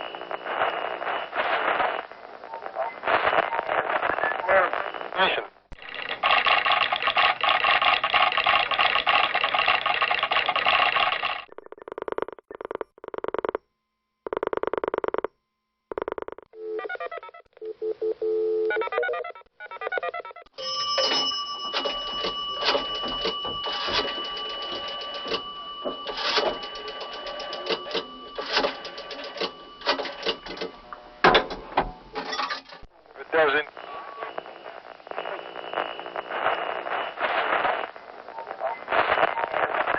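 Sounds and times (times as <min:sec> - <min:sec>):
rapid clicking: 0:05.7 - 0:13.6
electronic phone tones: 0:14.2 - 0:15.3, 0:15.9 - 0:31.3, 0:33.7 - 0:37.9
telephone bell ringing: 0:20.5 - 0:31.2.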